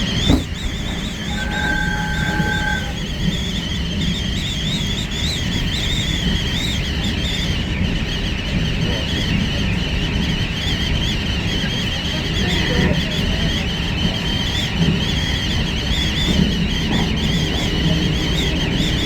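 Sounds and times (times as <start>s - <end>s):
train running rumble: 0.0s - 19.0s
wavering high-pitched whistle: 0.3s - 3.7s
steady tone: 0.4s - 3.3s.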